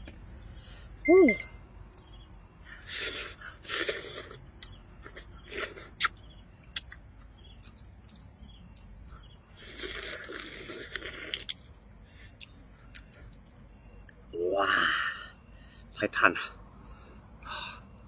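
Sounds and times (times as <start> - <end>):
crickets chirping: 0.0 - 18.0
person slurping noodles: 2.9 - 4.4.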